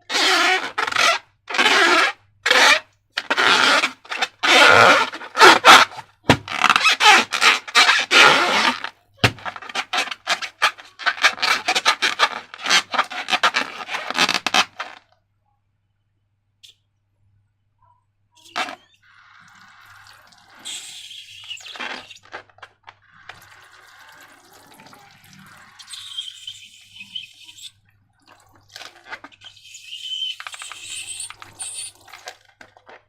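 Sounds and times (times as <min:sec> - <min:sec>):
rubbing and scraping strokes: 0:02.5 - 0:15.0, 0:20.4 - 0:27.7.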